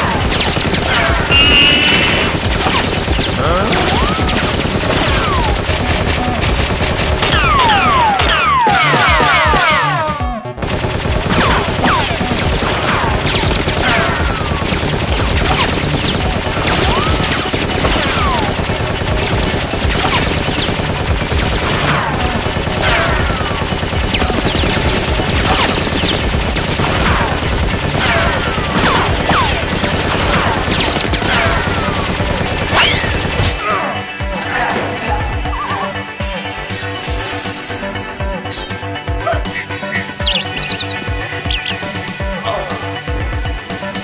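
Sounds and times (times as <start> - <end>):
heavy gunfire: 0.0 - 8.4, 10.6 - 35.7
falling whistling sounds: 1.3 - 2.9.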